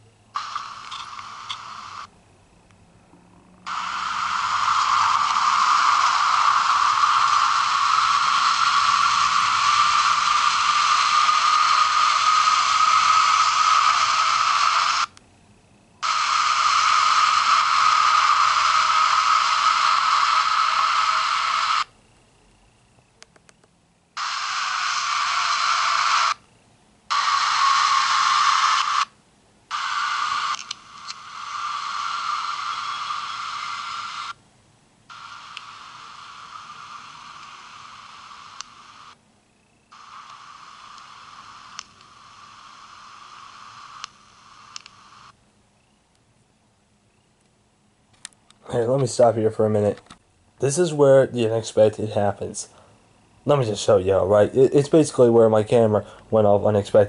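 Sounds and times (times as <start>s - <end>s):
harsh static hiss: 0.0s - 57.0s.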